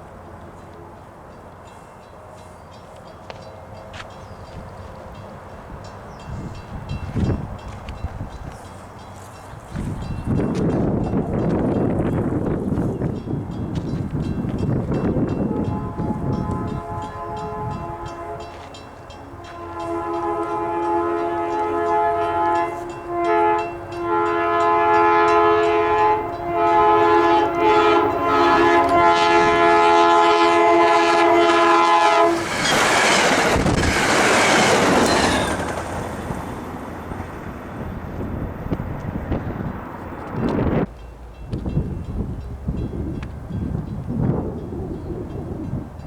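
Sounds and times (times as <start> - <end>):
train rushing past: 0.0 - 46.0
train air horn blasts: 15.4 - 32.5.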